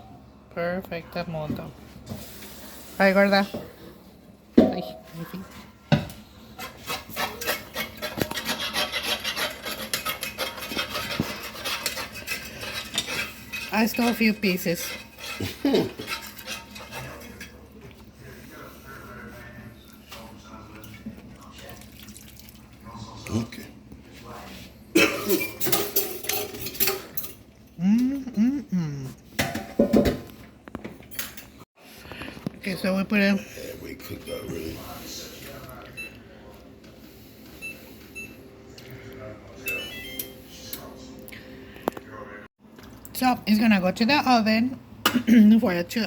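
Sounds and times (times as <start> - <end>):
utensil scraping a pan: 6.5 - 17.6
metal cookware clinking: 6.6 - 17.6, 25.0 - 27.4.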